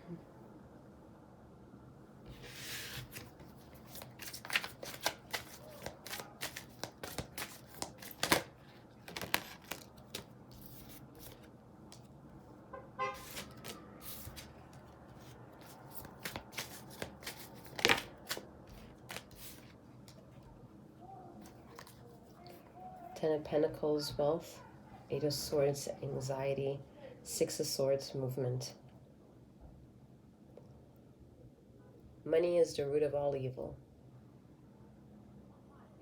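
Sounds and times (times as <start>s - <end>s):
cards being shuffled: 2.3s - 12.1s, 13.2s - 20.2s.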